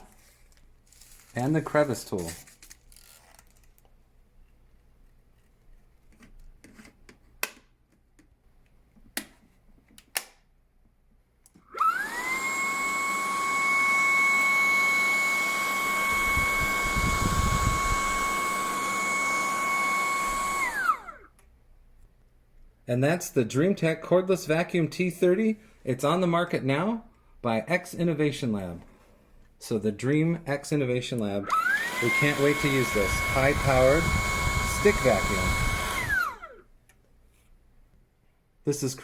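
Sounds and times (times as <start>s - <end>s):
stick vacuum motor whining: 11.7s - 21.3s, 31.2s - 36.6s.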